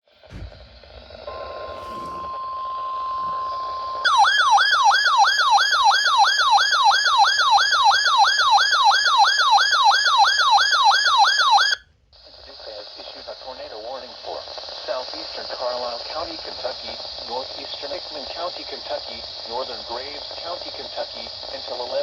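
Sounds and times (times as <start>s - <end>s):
radio receiver hiss: 0.1s - 4.2s, 12.2s - 22.0s
siren of falling sweeps: 1.2s - 6.7s.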